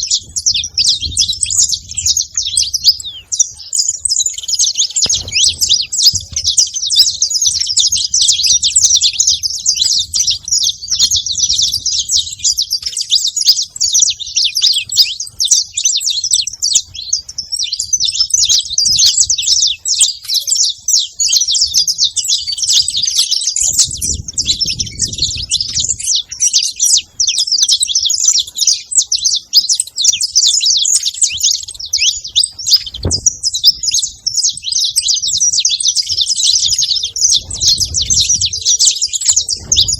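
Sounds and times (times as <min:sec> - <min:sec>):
finches chirping: 0:00.0 - 0:39.9.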